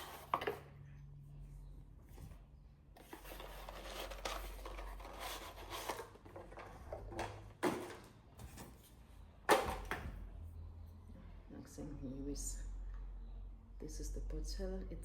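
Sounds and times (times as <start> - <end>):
packaging rustling and scraping: 0.0 - 0.6, 3.0 - 9.0.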